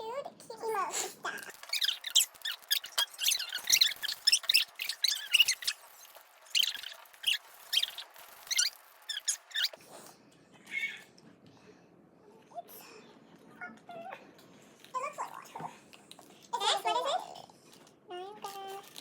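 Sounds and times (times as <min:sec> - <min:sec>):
slime squelching by hand: 0:00.9 - 0:09.8.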